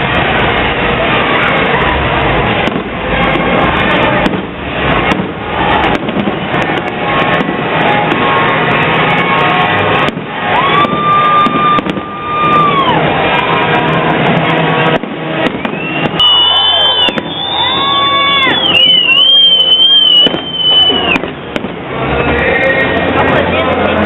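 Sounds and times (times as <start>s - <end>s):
fireworks bangs and crackles: 0.0s - 24.0s
rising whistling tone: 15.4s - 21.3s.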